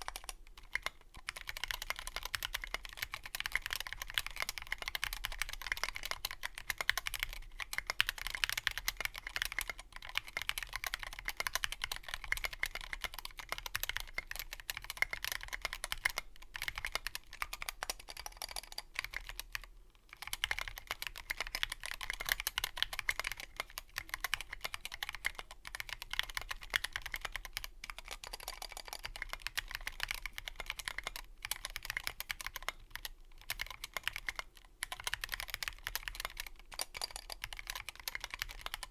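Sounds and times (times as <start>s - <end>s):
mechanical keyboard typing: 0.0s - 38.9s.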